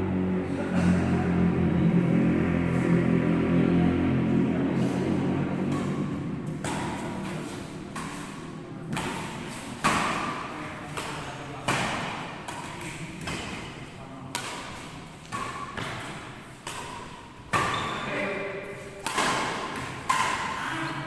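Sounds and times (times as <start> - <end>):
rackets hitting shuttlecock: 4.8 - 21.0.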